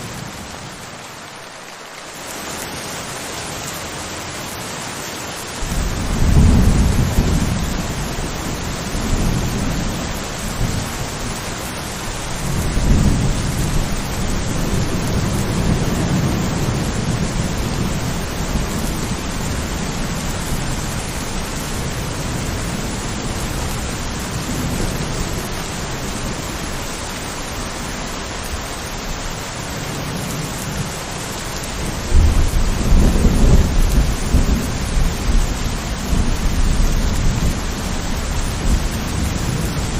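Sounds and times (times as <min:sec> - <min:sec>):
steady rain hissing: 0:00.0 - 0:39.9
thunder rumbling: 0:05.6 - 0:27.4, 0:31.8 - 0:39.9.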